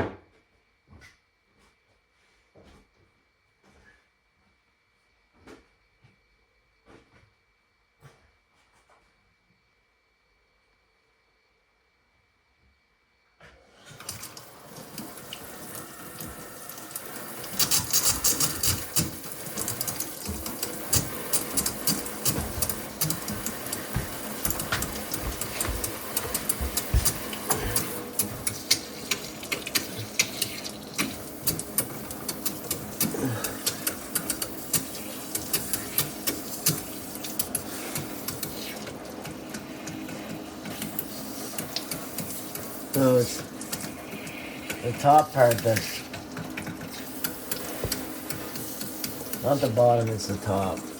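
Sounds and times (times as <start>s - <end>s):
water spraying from leaking fitting: 14.0s - 50.9s.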